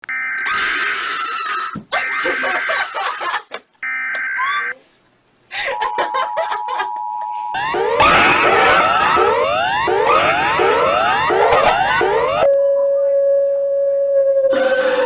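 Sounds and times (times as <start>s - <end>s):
electronic alarm tones: 5.8s - 14.4s
two-tone emergency alert signal: 5.8s - 14.6s.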